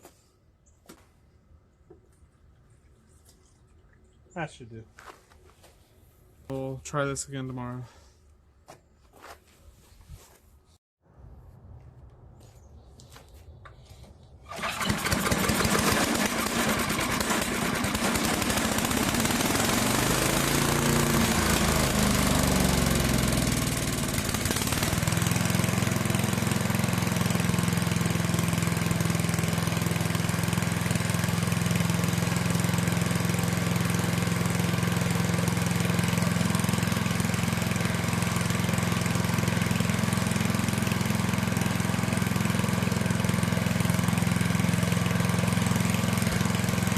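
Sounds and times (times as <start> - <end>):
chipper shredder gas engine running: 14.4 - 46.9.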